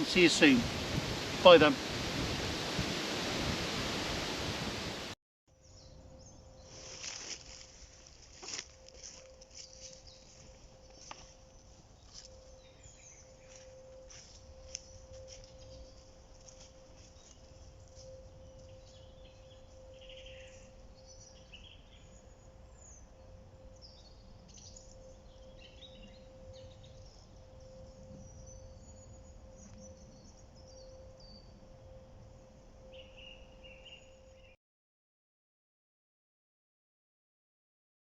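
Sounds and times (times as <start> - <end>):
birds chirping and trilling: 8.4 - 34.6.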